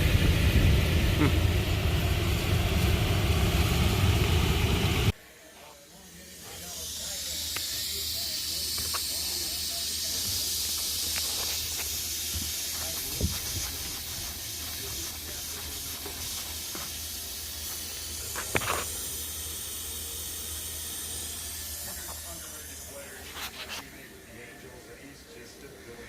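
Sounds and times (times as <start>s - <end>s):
air conditioning unit hiss and hum: 6.1s - 26.0s.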